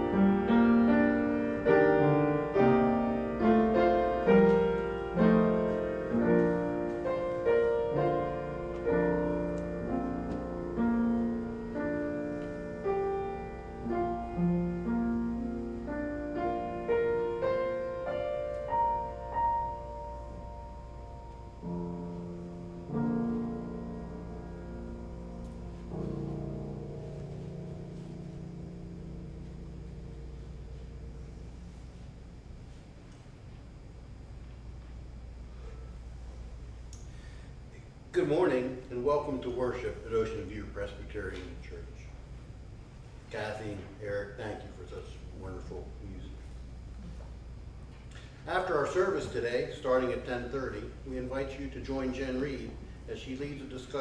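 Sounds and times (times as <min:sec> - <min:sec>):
slow classical piano piece: 0:00.0 - 0:37.5.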